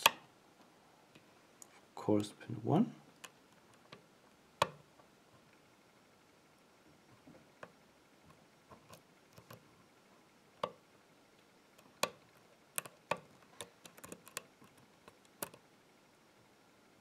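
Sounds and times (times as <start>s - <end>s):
lock pick clicking in lock pins: 12.8s - 15.6s.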